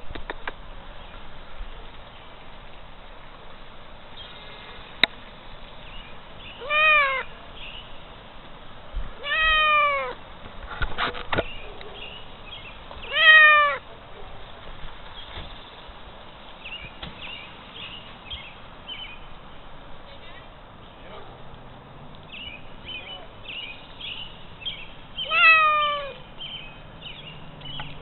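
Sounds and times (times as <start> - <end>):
kitten meowing: 6.6 - 7.2, 9.2 - 10.2, 13.1 - 13.8, 25.2 - 26.2.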